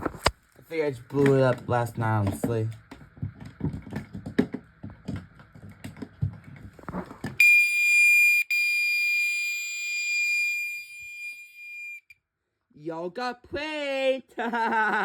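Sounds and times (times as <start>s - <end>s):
clicks and knocks of handling: 1.2s - 7.4s
fire alarm horn high-pitched tone: 7.4s - 12.2s.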